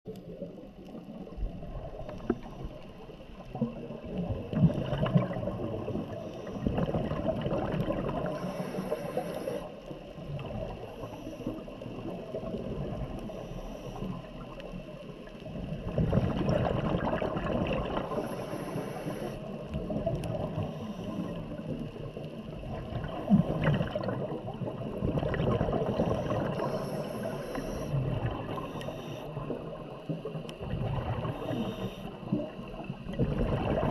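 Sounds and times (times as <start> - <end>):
bubbles gurgling underwater: 0.1 - 13.4, 14.0 - 33.9
regulator hissing inhalations: 8.3 - 9.7, 18.1 - 19.6, 26.1 - 28.0, 28.6 - 29.4, 31.3 - 32.3.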